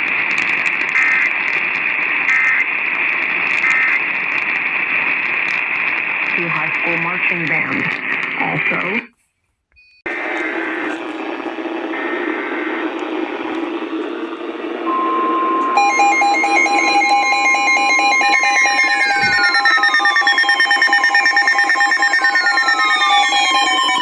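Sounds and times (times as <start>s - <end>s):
radio hiss: 0.0s - 9.1s, 10.1s - 24.0s
fast repeating electronic beeps: 10.1s - 24.0s
steady alarm tone: 10.1s - 24.0s.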